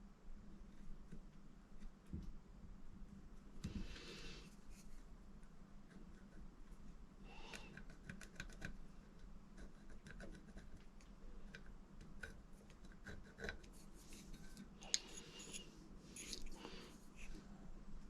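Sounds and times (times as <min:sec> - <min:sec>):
low workshop hum: 0:00.0 - 0:18.0.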